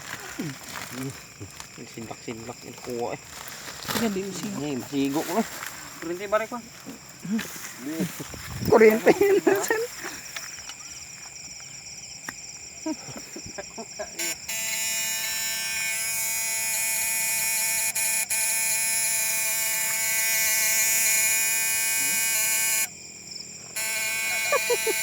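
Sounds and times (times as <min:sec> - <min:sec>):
loud electric buzz: 0:14.2 - 0:22.9, 0:23.8 - 0:25.0.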